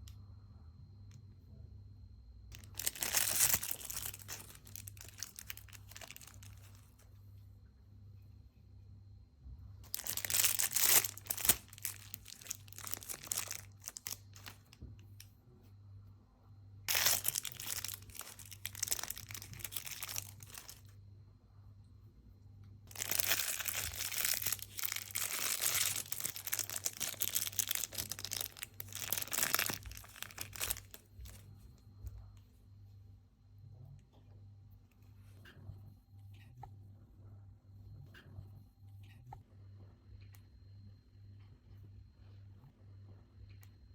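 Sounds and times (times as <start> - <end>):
plastic packaging crinkling and tearing: 2.5 - 7.0, 9.8 - 14.8, 16.9 - 20.9, 22.9 - 31.5.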